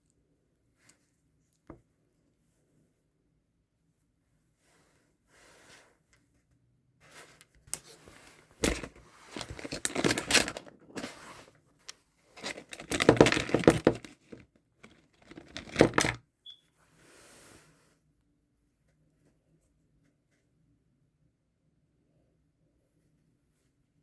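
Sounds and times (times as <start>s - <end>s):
packaging crinkling: 8.6s - 11.2s, 12.4s - 16.2s.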